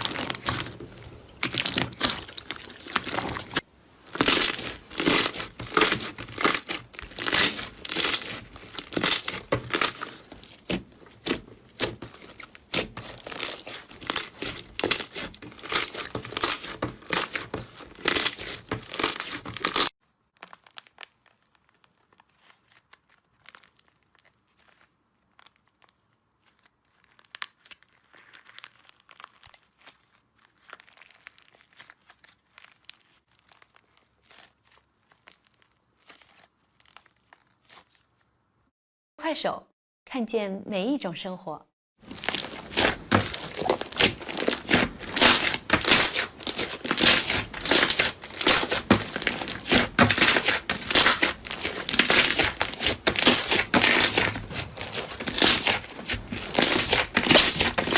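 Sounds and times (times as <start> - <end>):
slime crackling and crinkling: 0.0 - 38.7, 42.0 - 57.9.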